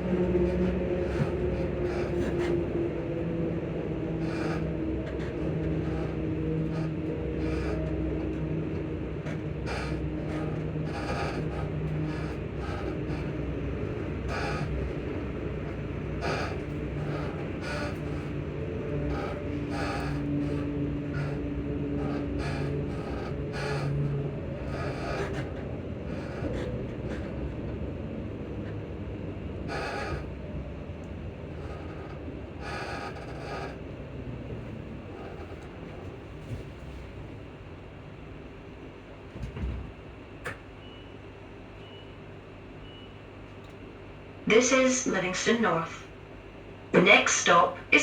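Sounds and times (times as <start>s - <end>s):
train wheels rumbling on rail: 0.0s - 40.8s
train motors humming: 44.5s - 48.0s.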